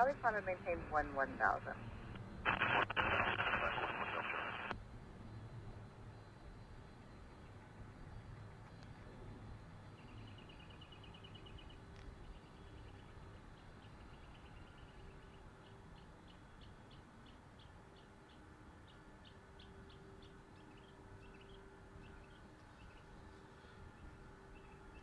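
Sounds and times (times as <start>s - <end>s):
faint bird chirping: 5.3s - 25.0s.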